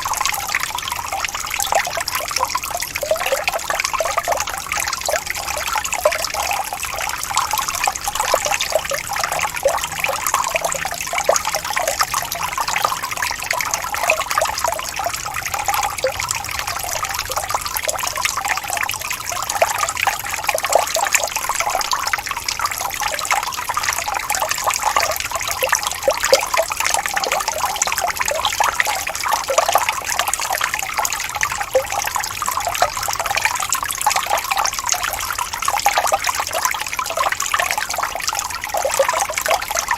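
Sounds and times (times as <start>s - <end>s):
waterfall trickling and splashing: 0.0s - 39.9s.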